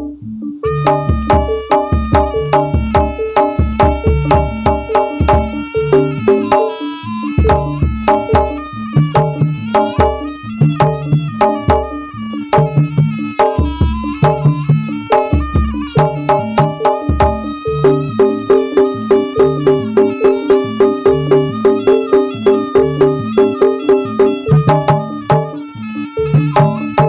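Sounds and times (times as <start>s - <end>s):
gamelan metal instruments ringing: 0.0s - 27.0s
drums: 0.8s - 6.7s, 7.3s - 11.9s, 12.5s - 25.5s.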